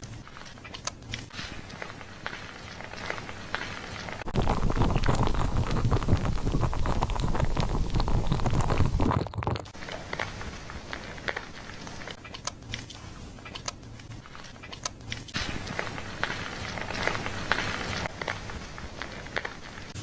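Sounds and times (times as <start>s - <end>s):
shower water spraying: 1.4s - 9.1s.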